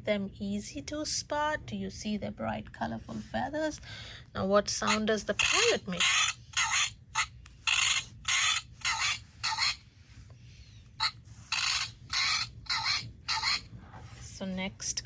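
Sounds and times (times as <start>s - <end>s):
parrot squawks from small speaker: 4.8s - 9.8s, 11.0s - 13.7s.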